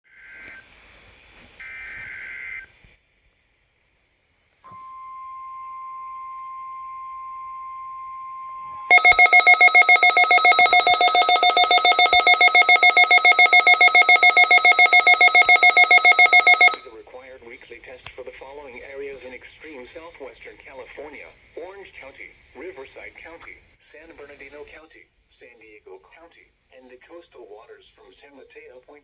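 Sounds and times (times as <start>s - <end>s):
buzzy pulsing alarm tone: 4.8s - 16.8s.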